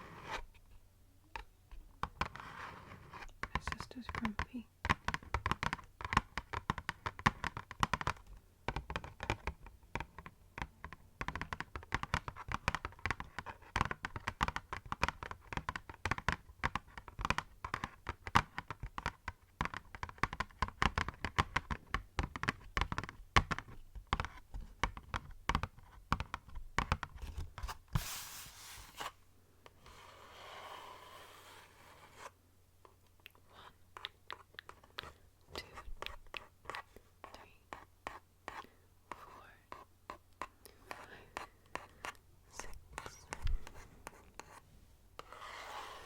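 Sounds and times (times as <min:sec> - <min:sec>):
fingernails tapping on cardboard: 0:03.4 - 0:27.2
cardboard rustling: 0:27.2 - 0:29.2.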